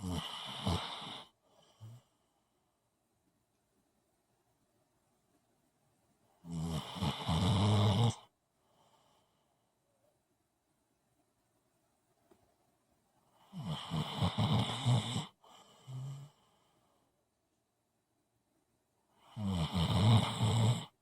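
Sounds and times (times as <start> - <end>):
loud snores: 0.0 - 2.0, 6.4 - 8.3, 13.4 - 16.4, 19.2 - 21.0.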